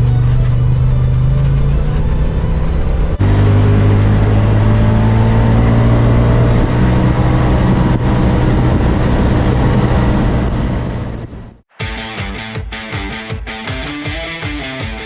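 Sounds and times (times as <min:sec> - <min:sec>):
vehicle engine humming: 0:00.0 - 0:11.7.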